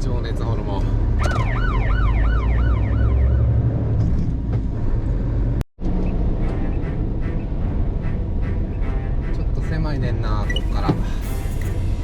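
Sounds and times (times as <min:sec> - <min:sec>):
warbling siren-like tone: 0:01.2 - 0:03.8.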